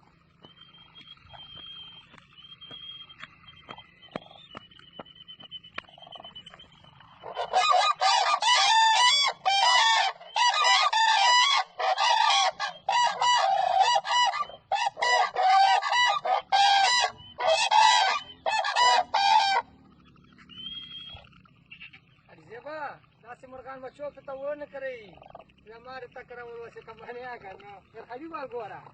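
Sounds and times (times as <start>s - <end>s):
cranes honking calls: 0.1s - 4.8s, 5.8s - 22.3s.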